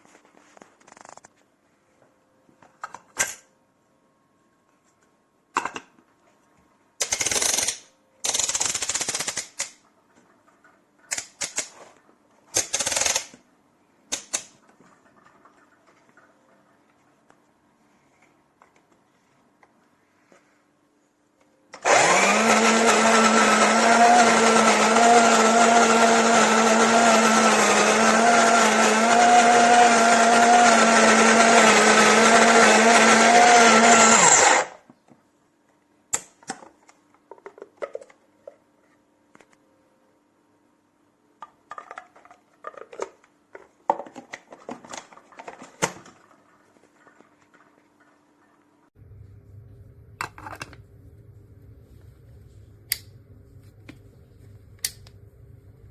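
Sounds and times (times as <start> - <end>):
coffee grinder motor running: 21.8 - 34.7.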